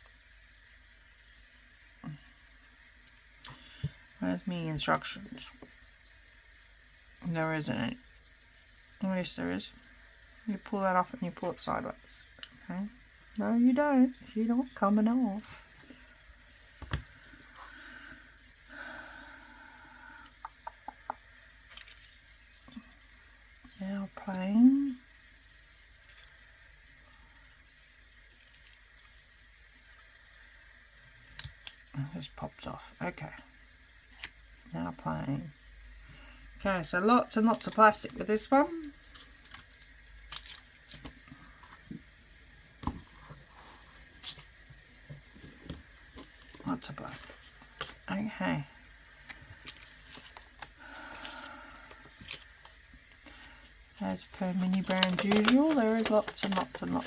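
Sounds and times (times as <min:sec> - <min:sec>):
plastic packaging crinkling: 0:39.0 - 0:41.2, 0:49.6 - 0:57.0
faint plastic rubbing: 0:49.5 - 0:57.0.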